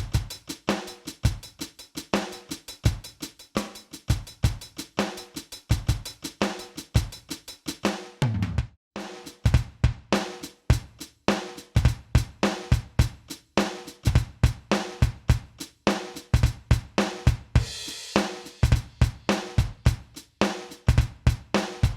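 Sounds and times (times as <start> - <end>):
hi-hat: 0.0 - 7.9, 10.2 - 16.5, 17.1 - 21.9
snare drum: 0.0 - 21.9
kick drum: 9.5 - 10.1, 11.8 - 13.2, 14.1 - 15.5, 16.4 - 17.8, 18.6 - 20.0, 20.9 - 21.9
cymbal: 17.0 - 20.8.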